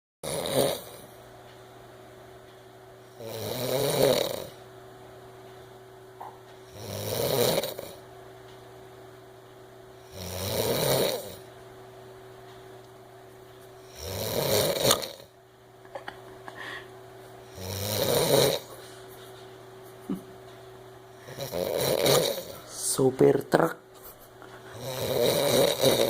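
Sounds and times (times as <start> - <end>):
person snoring loudly: 0.2 - 1.0, 3.2 - 4.6, 6.7 - 8.0, 10.1 - 11.4, 13.8 - 15.3, 17.5 - 18.7, 21.2 - 22.6, 24.7 - 26.0.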